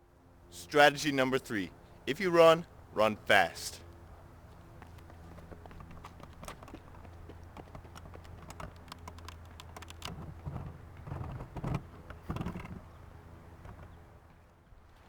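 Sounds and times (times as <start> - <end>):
running footsteps crunching: 4.4 - 8.8.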